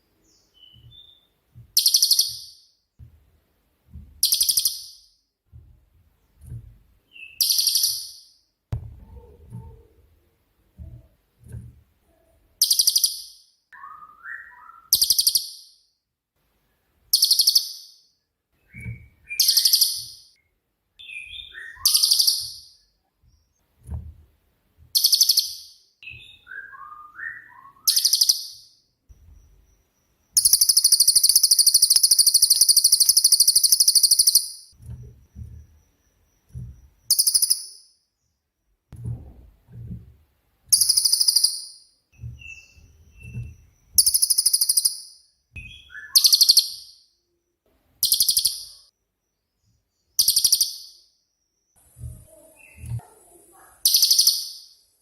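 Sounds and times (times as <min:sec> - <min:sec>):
soft rising bird chirps: 0:21.0 - 0:23.5
bird rattling high-pitched trills: 0:40.7 - 0:41.6.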